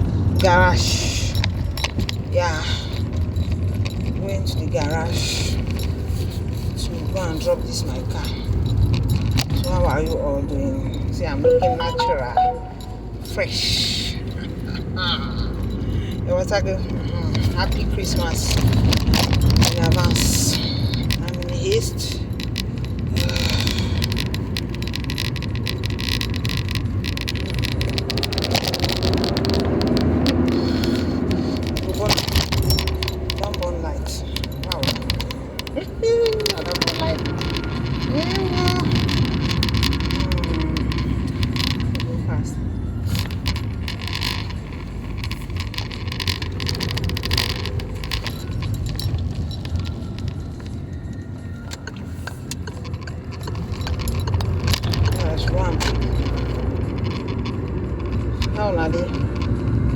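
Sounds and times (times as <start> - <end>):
car engine and road rumble: 0.0 - 59.9
small rattles and ticks: 14.3 - 59.9.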